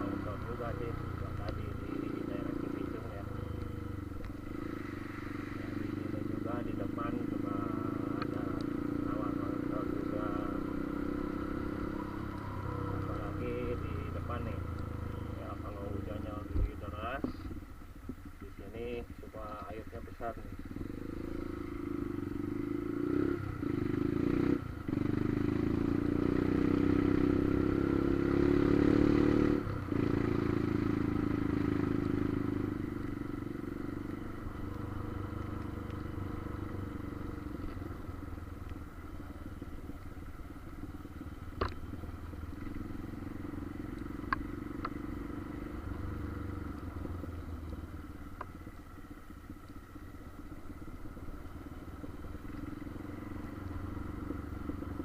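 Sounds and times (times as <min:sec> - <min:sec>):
motorcycle engine running: 0:00.0 - 0:55.0
sharp clicks: 0:44.0 - 0:45.0.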